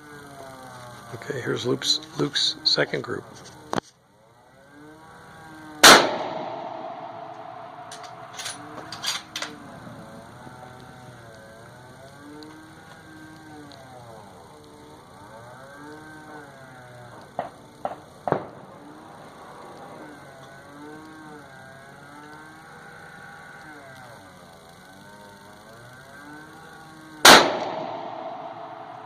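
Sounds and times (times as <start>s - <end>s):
faint wavering drone: 0.0s - 17.2s, 18.5s - 29.0s.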